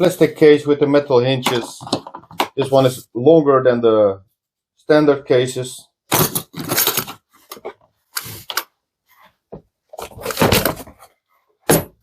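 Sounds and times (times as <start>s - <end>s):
plastic case rustling and scraping: 1.5s - 3.0s, 6.1s - 11.3s.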